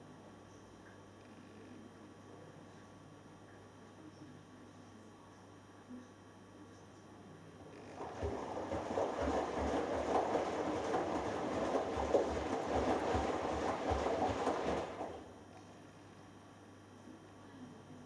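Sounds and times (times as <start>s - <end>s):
wet laundry tumbling with thuds: 7.8s - 15.3s
water sloshing in washing machine: 7.8s - 15.4s.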